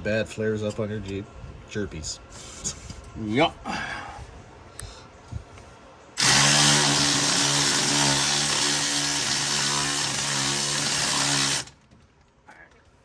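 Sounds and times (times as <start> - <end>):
power tool running: 6.2 - 11.8.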